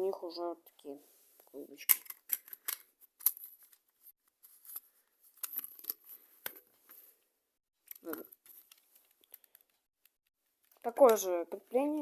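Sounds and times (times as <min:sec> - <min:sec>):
plastic parts clicking and scraping: 0:01.8 - 0:07.0, 0:07.8 - 0:11.2.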